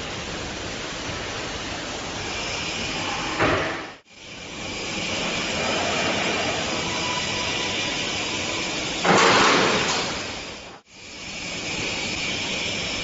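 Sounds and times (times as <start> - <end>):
steady hiss: 0.0 - 13.0
sliding safety door shutting: 9.0 - 10.3.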